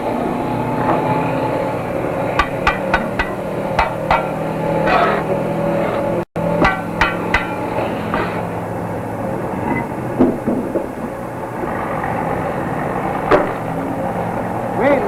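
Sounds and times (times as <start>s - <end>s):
heavy machinery droning: 0.0s - 15.0s
metal clanking and ringing: 2.4s - 5.4s, 6.4s - 8.5s.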